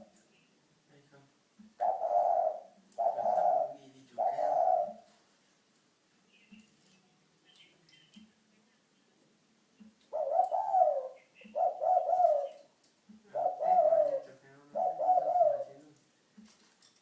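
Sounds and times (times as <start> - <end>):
dove cooing: 1.8 - 5.2, 9.8 - 16.0.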